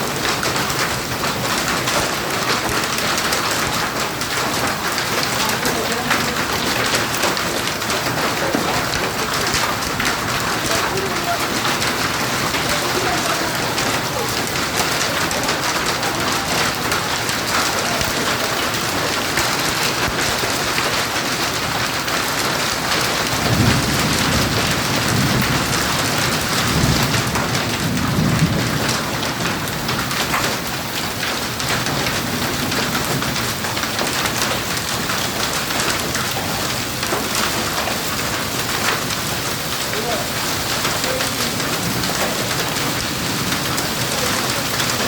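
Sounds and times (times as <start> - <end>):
thunder rumble: 0.0 - 30.5
hail and heavy rain pelting: 0.0 - 45.0.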